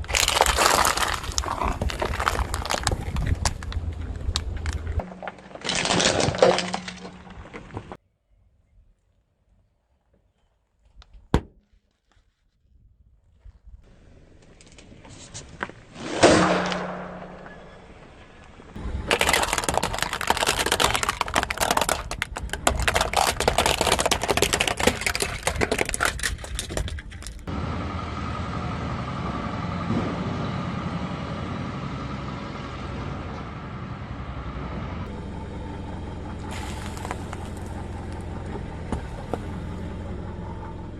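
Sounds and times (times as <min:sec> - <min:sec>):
sharp crack: 0:00.0 - 0:08.0, 0:15.6 - 0:27.4
tyre crunching objects: 0:00.0 - 0:08.0, 0:18.7 - 0:27.5, 0:36.5 - 0:39.5
car engine running: 0:16.8 - 0:40.9.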